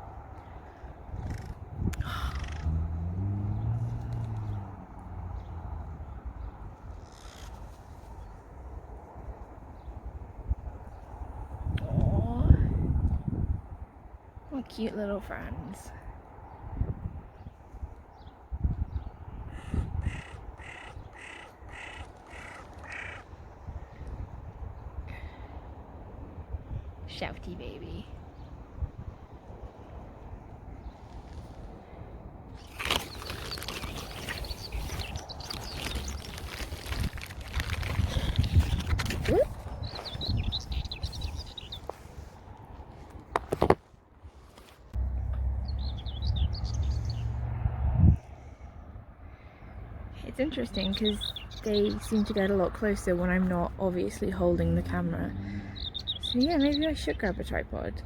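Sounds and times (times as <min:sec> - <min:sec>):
wind buffeting microphone: 0:00.9 - 0:07.1, 0:08.1 - 0:14.5, 0:16.3 - 0:43.4, 0:45.6 - 0:48.5
birds twittering: 0:18.1 - 0:24.0, 0:32.6 - 0:42.0, 0:45.6 - 0:47.4, 0:50.5 - 0:52.6, 0:54.6 - 0:57.4
crow cawing: 0:19.6 - 0:23.3.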